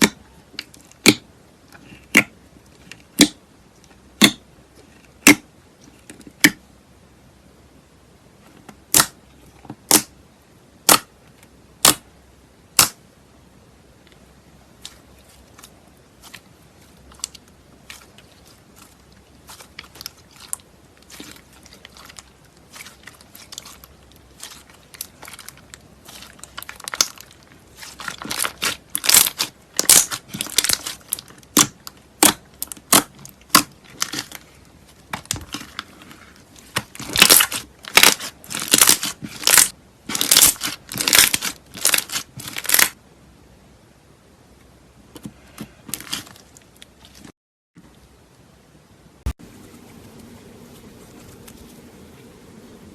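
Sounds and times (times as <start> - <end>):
slime crackling and popping: 17.1 - 34.5, 36.6 - 43.0.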